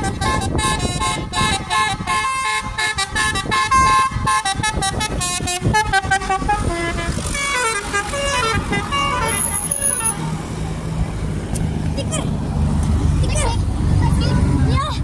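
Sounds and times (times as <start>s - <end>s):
musical bus air horn tune: 0.0s - 10.3s.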